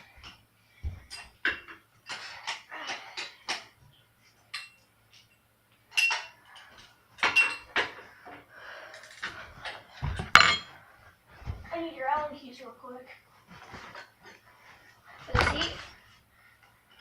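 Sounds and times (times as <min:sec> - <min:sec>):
metal parts clinking and clanking: 0:10.3 - 0:10.7.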